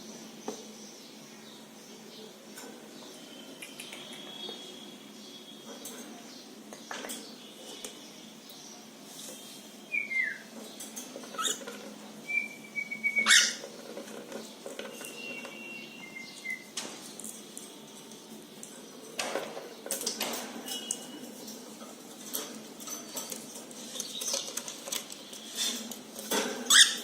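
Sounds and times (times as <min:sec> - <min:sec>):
cockatiels whistling calls: 0:09.9 - 0:10.4, 0:12.3 - 0:13.6.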